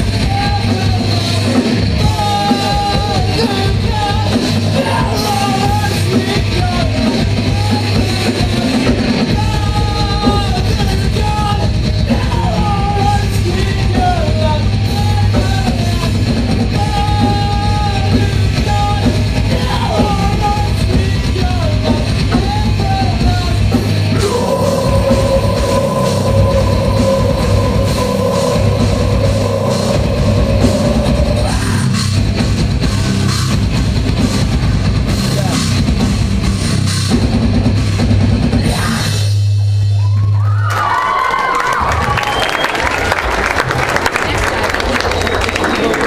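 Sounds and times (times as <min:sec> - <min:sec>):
sung and yelled vocals: 0:00.0 - 0:32.4
live metal band playing: 0:00.0 - 0:40.0
steady held tone: 0:24.1 - 0:32.0.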